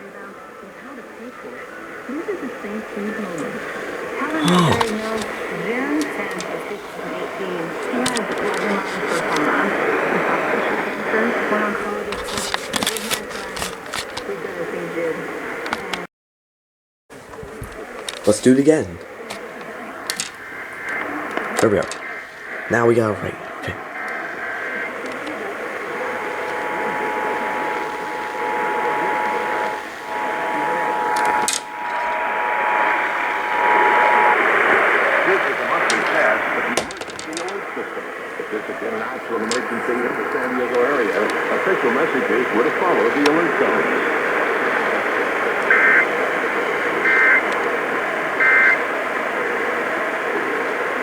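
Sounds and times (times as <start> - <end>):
rasping hiss: 1.5 - 14.2, 17.2 - 50.8
digital header burst: 17.8 - 40.6
two-note attention signal: 25.4 - 36.4.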